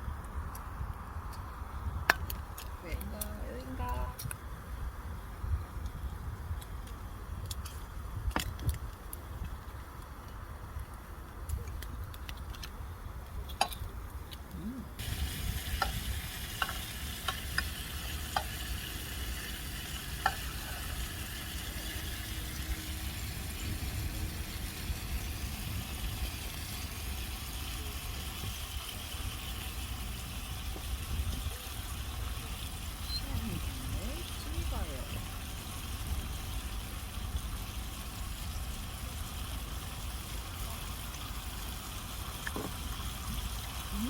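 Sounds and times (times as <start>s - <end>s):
food sizzling in a pan: 15.0s - 44.0s.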